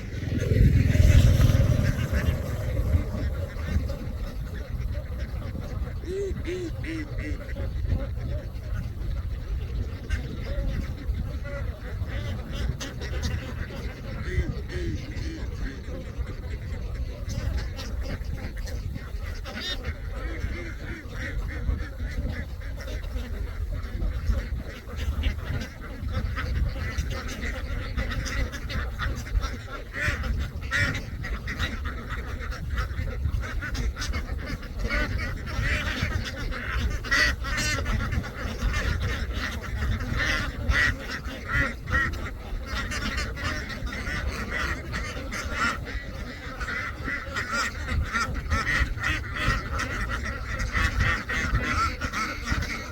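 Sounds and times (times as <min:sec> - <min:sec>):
low rumble: 0:00.0 - 0:06.2
ducks quacking: 0:00.0 - 0:52.9.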